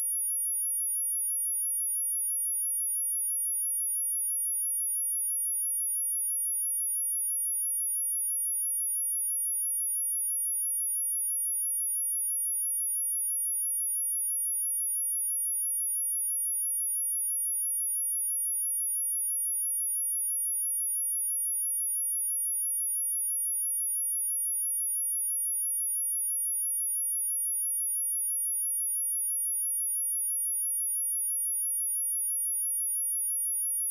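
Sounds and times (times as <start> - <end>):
high-pitched sine test tone: 28.6 - 33.9.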